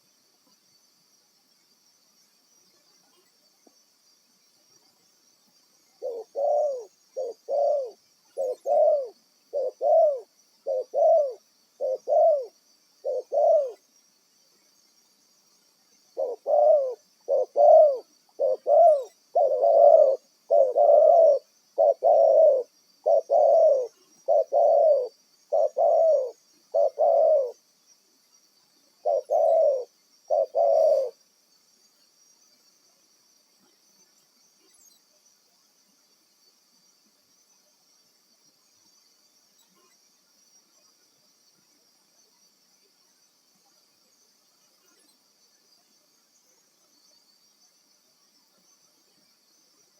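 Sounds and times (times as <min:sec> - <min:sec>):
dove cooing: 0:06.0 - 0:13.8, 0:16.2 - 0:27.6, 0:29.0 - 0:31.2.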